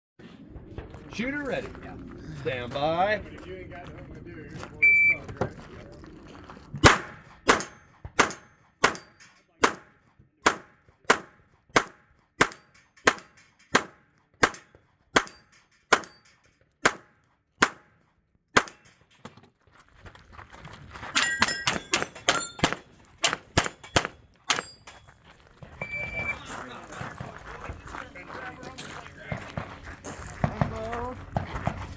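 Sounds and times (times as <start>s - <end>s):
pistol shots: 6.8s - 16.2s, 16.8s - 17.9s, 18.6s - 18.9s
metallic ringing: 21.2s - 23.0s.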